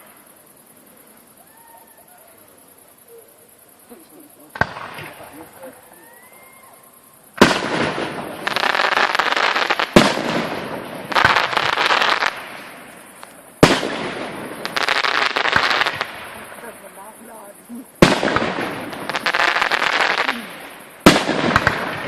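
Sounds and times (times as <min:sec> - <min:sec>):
fireworks crackling: 0:00.0 - 0:00.4, 0:03.9 - 0:22.0
fireworks banging: 0:04.5 - 0:05.8, 0:07.4 - 0:17.4, 0:18.0 - 0:22.0.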